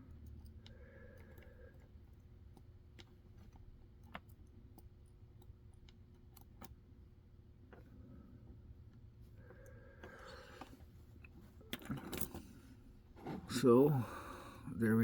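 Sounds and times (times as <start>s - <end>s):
small clicks of tweezers and pins: 0.1s - 7.0s.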